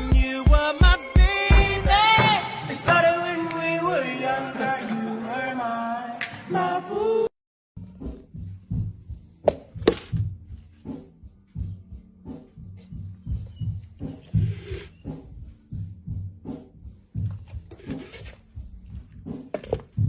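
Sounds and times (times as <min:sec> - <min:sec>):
music with sung vocals over a beat: 0:00.0 - 0:07.3.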